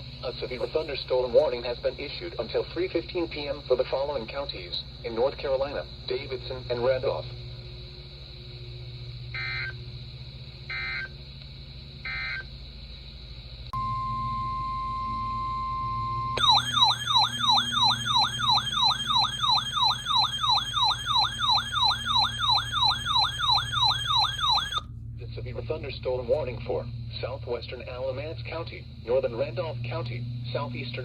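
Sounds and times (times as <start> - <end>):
steady warning alarm tone: 4.8 - 10.0, 10.6 - 11.2, 12.0 - 12.5, 13.7 - 24.9
sweeping siren alarm tone: 8.6 - 10.0, 10.7 - 11.2, 12.0 - 12.5, 13.7 - 24.9
screeching data bursts: 16.4 - 24.8.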